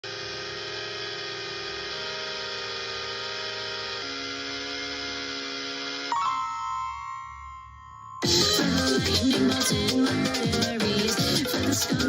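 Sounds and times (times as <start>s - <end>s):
buzzy synthesizer chord: 0.1s - 11.5s
high ringing tone: 5.8s - 9.3s.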